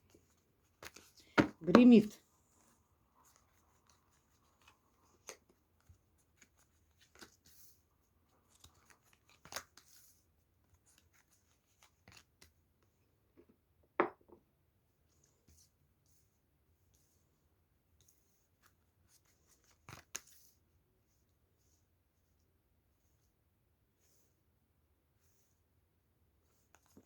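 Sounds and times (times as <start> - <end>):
cards shuffled snapping: 0.8 - 1.9, 4.6 - 7.5, 8.5 - 10.1, 10.9 - 12.5, 19.5 - 20.5.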